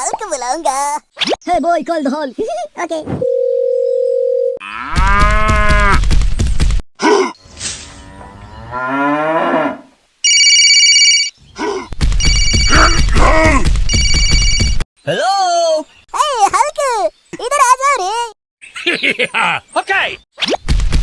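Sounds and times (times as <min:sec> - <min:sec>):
electronic ringing tone: 0:10.3 - 0:11.3, 0:12.2 - 0:13.0, 0:13.9 - 0:14.8.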